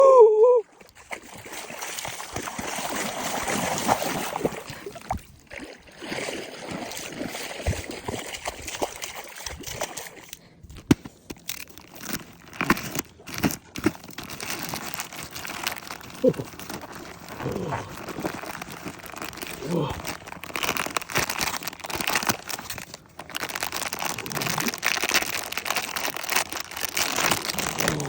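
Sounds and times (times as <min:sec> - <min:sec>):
package rustling: 0:11.4 - 0:28.0.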